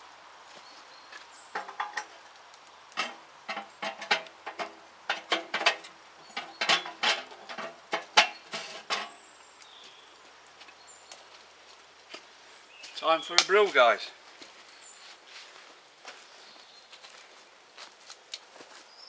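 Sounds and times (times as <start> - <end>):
metal cookware clanking: 1.5 - 2.2, 3.0 - 9.2.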